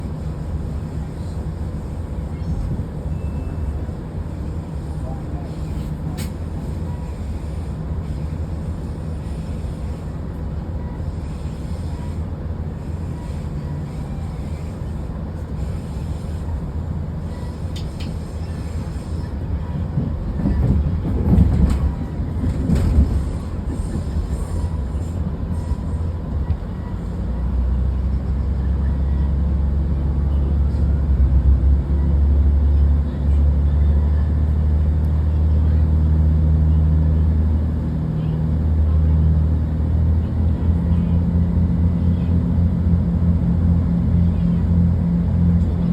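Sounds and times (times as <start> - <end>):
train rumbling: 0.0 - 45.9
train clattering: 12.9 - 26.9.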